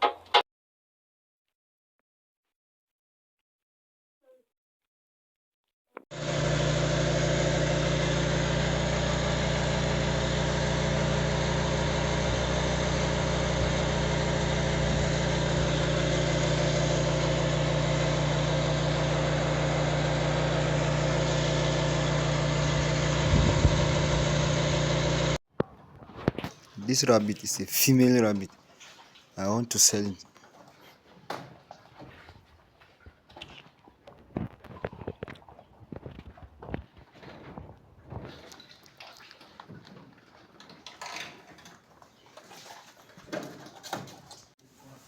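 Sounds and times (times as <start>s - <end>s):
engine running steadily: 6.2s - 25.4s.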